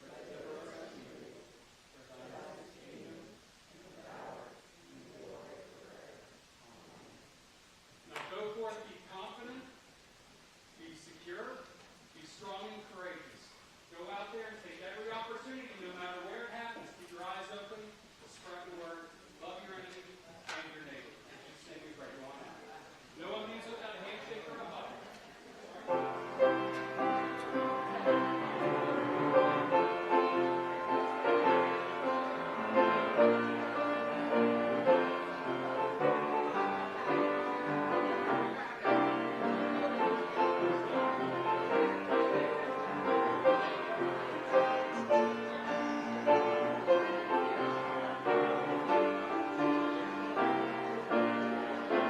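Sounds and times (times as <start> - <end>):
piano music: 25.8 - 52.0.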